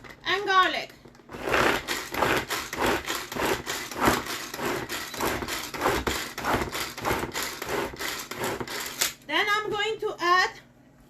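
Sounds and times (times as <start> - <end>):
pull-cord chopper whirring: 1.1 - 9.1.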